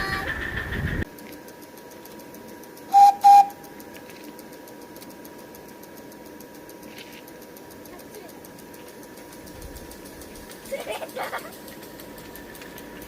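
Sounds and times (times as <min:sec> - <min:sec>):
faint rapid ticking: 0:01.0 - 0:13.0
steam locomotive whistle toots: 0:02.9 - 0:03.6.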